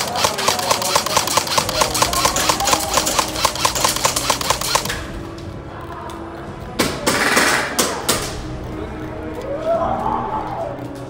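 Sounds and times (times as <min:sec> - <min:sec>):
rapid sharp clicks: 0:00.0 - 0:05.2.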